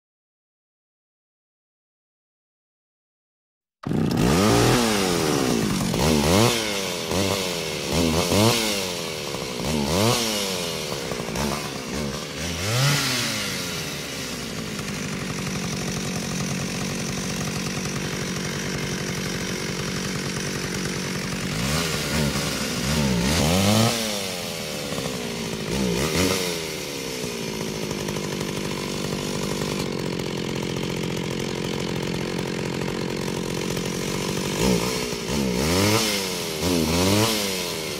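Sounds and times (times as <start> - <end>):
chainsaw engine revving: 3.8 - 37.9.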